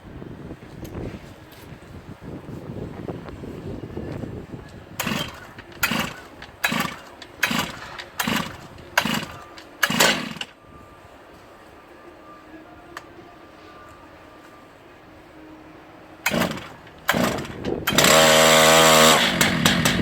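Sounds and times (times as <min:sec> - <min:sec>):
starter cord yanks: 0:05.0 - 0:10.5
chainsaw engine bursts: 0:05.0 - 0:10.6, 0:16.2 - 0:20.0.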